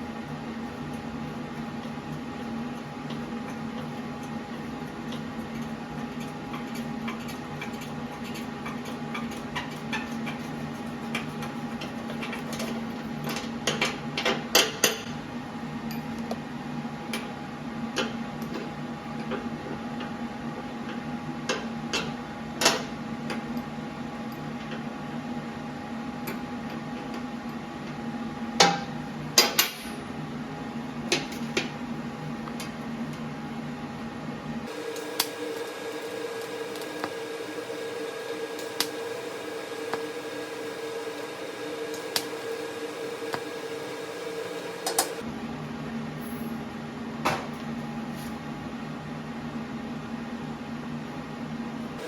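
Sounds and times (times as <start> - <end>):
steady low hum: 0.0 - 9.5.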